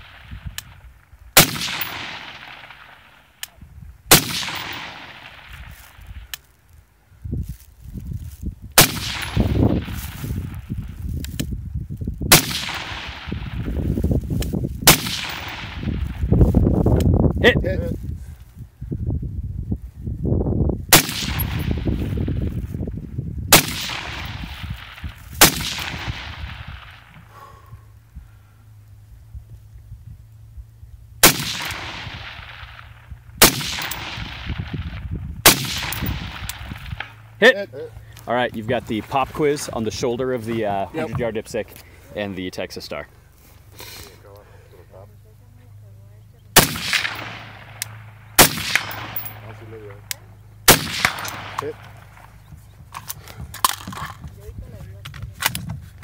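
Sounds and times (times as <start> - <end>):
rifle shots echoing: 0.0 - 6.3, 8.8 - 10.9, 12.3 - 14.0, 14.8 - 16.5, 20.9 - 22.7, 23.5 - 27.4, 31.2 - 37.5, 46.5 - 52.5
low rumble: 0.0 - 42.2, 44.4 - 56.0.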